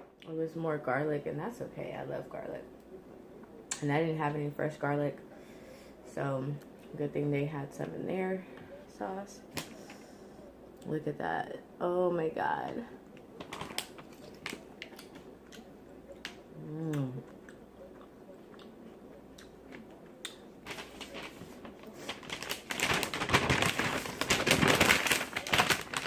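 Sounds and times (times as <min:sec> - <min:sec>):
loud crinkling and rustling: 0:13.1 - 0:15.3, 0:20.6 - 0:26.0
wet chewing and smacking: 0:13.1 - 0:20.7
person humming: 0:16.5 - 0:17.4.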